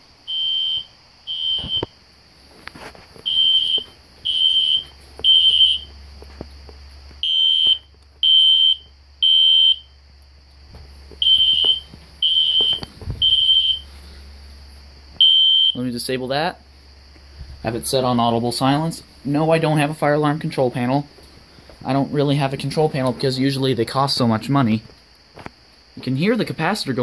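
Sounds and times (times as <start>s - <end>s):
faint high whine: 0.0s - 27.0s
fire alarm horn beeps: 0.3s - 1.9s, 3.3s - 5.9s, 7.2s - 10.0s, 11.2s - 13.9s, 15.2s - 15.8s.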